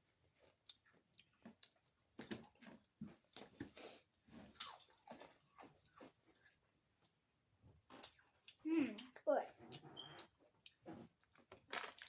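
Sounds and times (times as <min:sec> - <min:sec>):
person chewing crunchy crisps: 0:00.0 - 0:07.2, 0:09.7 - 0:12.0.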